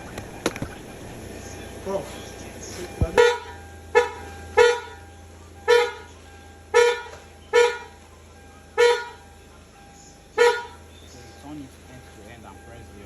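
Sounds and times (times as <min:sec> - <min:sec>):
car horn short taps: 0:03.0 - 0:05.0.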